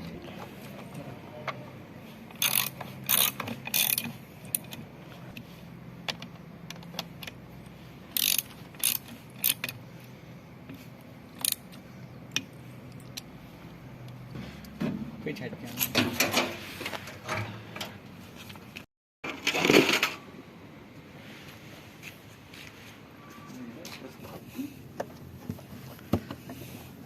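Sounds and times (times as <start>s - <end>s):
ratchet clicking and rattling: 2.3s - 4.8s, 8.1s - 9.8s, 11.4s - 13.3s.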